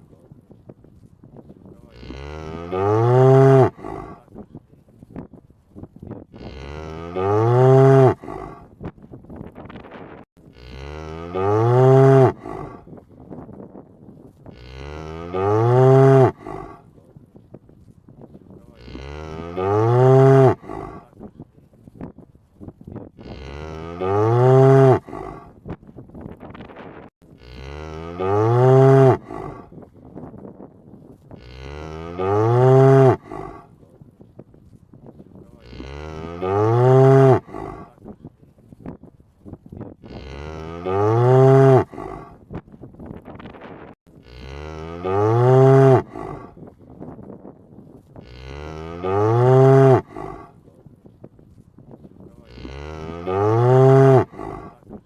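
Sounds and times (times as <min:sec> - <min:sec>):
cow mooing: 0:01.8 - 0:04.2, 0:06.4 - 0:08.7, 0:10.5 - 0:12.8, 0:14.5 - 0:16.8, 0:18.7 - 0:21.1, 0:23.2 - 0:25.5, 0:27.4 - 0:29.7, 0:31.4 - 0:33.7, 0:35.6 - 0:38.0, 0:40.0 - 0:42.4, 0:44.2 - 0:46.6, 0:48.2 - 0:50.5, 0:52.4 - 0:54.8.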